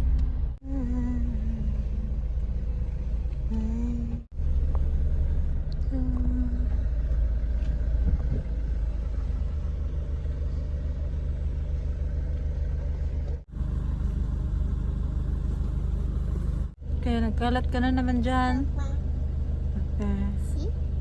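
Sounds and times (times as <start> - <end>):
car cabin rumble: 0.0 - 9.8.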